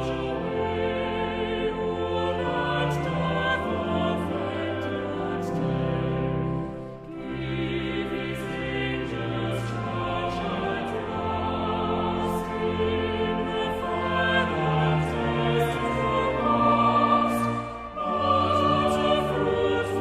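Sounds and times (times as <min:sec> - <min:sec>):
congregation singing a hymn: 0:00.0 - 0:20.0
sustained instrumental accompaniment: 0:00.0 - 0:20.0.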